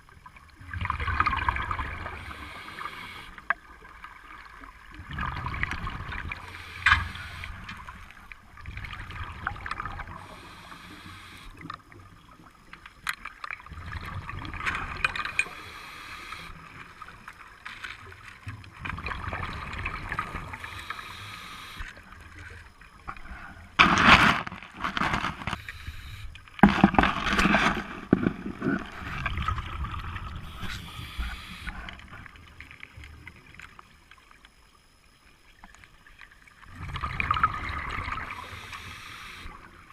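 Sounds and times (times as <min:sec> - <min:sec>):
bubbling gurgles: 0:00.0 - 0:03.0, 0:03.6 - 0:10.4, 0:13.4 - 0:15.5, 0:18.6 - 0:20.9, 0:26.6 - 0:33.6, 0:36.6 - 0:38.9
diver breathing through regulator: 0:02.1 - 0:03.4, 0:10.1 - 0:11.6, 0:15.4 - 0:16.6, 0:20.4 - 0:21.9, 0:25.5 - 0:26.4, 0:30.4 - 0:32.2, 0:38.3 - 0:39.6.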